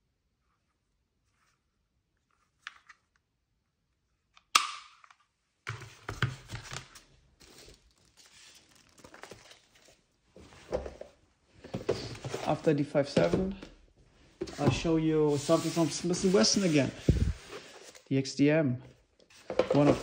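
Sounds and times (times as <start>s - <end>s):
rustling and handling: 0.4s - 3.3s, 5.1s - 18.1s, 19.2s - 20.0s
pistol clicks: 4.6s - 5.0s.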